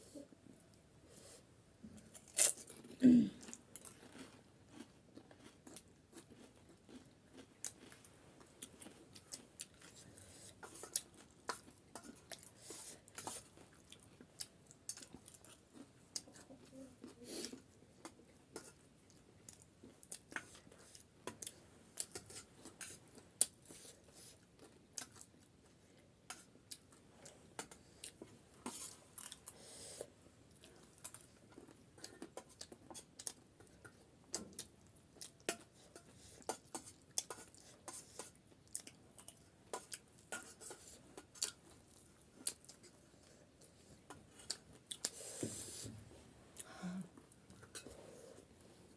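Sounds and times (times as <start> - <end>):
chewing crunchy snack: 2.0 - 25.5.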